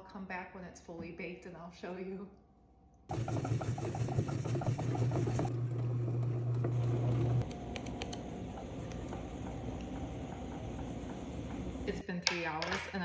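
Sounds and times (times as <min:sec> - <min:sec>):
bread machine motor humming: 0:03.1 - 0:11.9.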